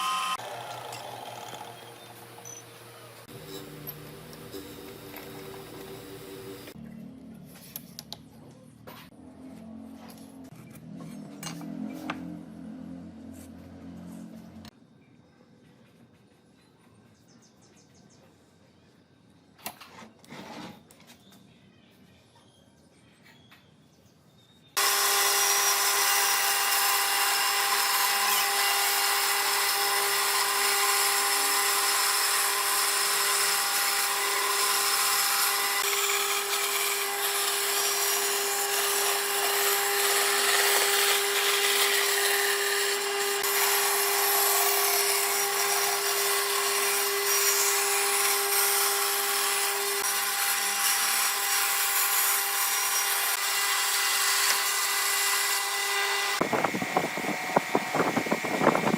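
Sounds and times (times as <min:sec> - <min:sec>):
power tool cutting wood: 0:00.0 - 0:06.8, 0:24.8 - 0:58.9.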